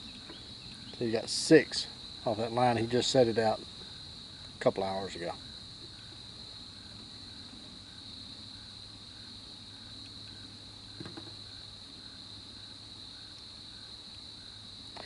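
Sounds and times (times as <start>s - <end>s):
crickets trilling: 0.0s - 15.0s
faint knock: 11.0s - 11.4s.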